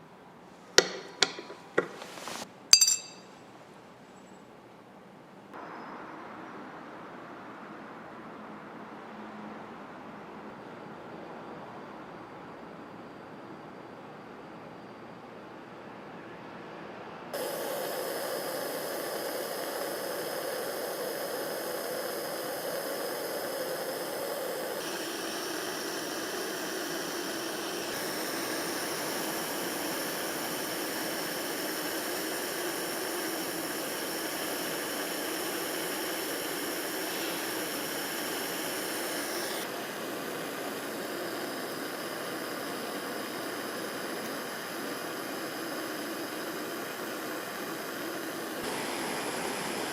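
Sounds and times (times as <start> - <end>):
torch flame hissing: 0.8 - 2.5, 17.4 - 49.9.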